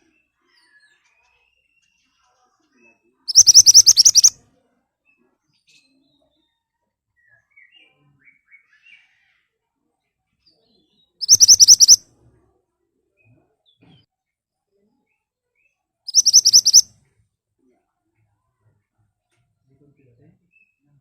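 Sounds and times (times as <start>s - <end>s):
faint bird chirps: 0.0s - 4.4s, 10.5s - 12.0s, 15.0s - 16.9s
bird giving sharp calls: 3.3s - 4.3s, 11.2s - 12.0s, 16.1s - 16.8s.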